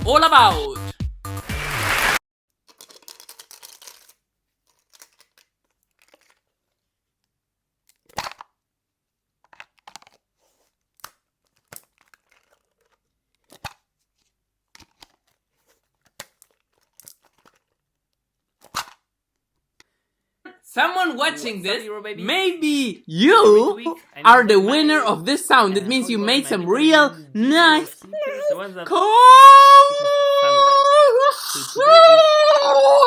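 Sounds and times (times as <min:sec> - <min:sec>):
can crackling and tearing: 0:01.6 - 0:06.5, 0:11.0 - 0:13.8, 0:14.8 - 0:17.8.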